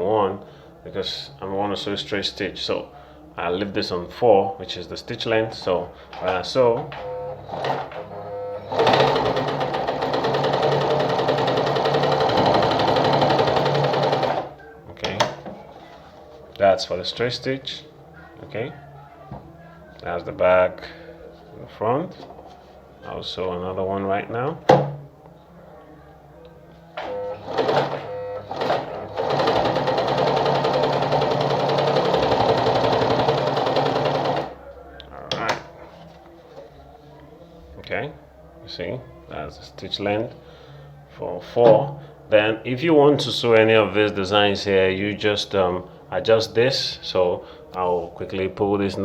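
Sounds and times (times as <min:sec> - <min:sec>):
sewing machine stitching: 0:07.5 - 0:08.1, 0:08.7 - 0:14.5, 0:27.3 - 0:34.5.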